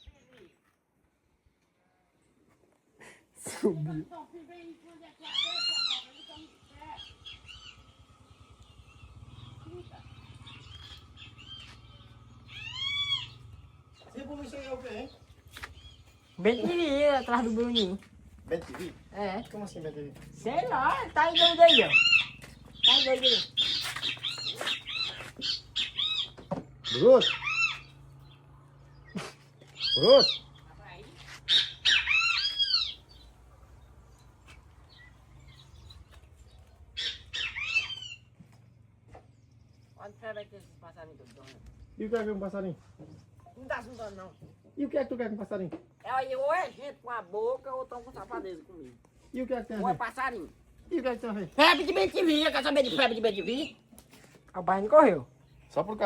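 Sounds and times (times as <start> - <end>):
faint bird chirps: 4.6 - 18.1
bird call with sharp arching notes: 5.3 - 18.0, 21.2 - 28.4, 29.0 - 30.6, 31.2 - 33.3, 34.9 - 38.3, 51.6 - 53.9
loud bird-like whistled call: 37.0 - 38.3.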